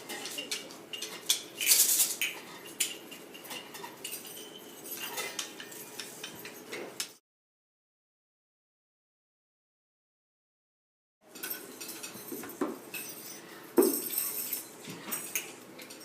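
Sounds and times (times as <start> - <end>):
percussion rattling shake: 0.0 - 7.2, 11.3 - 16.0.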